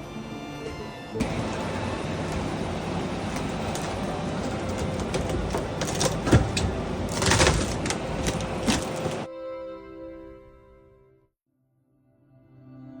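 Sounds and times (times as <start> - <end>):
steady noisy background: 0.0 - 9.3
knocks and clatter: 1.2 - 9.3.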